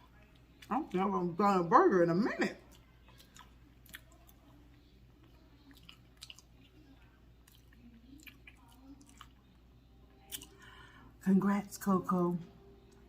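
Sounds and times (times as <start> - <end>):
low steady hum: 0.0 - 13.0
faint chewing: 2.6 - 10.9.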